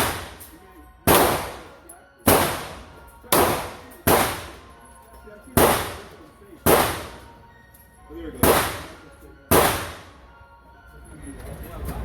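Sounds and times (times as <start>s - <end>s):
loud gunshots: 0.0s - 0.5s, 1.1s - 4.6s, 5.6s - 7.3s, 8.4s - 10.2s.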